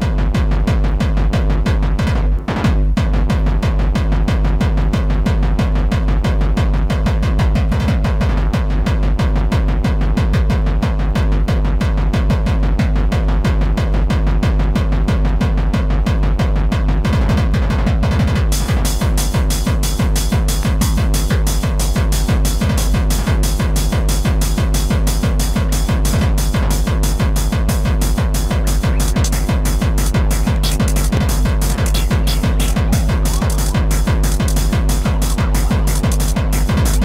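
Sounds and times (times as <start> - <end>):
driving kick-drum beat: 0.0 - 37.0
crisp high percussion pattern: 18.5 - 37.0
layered electronic sounds: 18.5 - 37.0.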